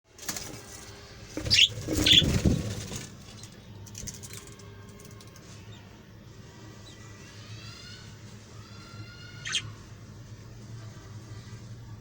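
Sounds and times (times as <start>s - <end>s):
parrots flapping wings: 0.1s - 5.4s
faint bird chirping: 1.4s - 2.5s, 3.3s - 12.0s
parrot high calls: 8.6s - 9.8s.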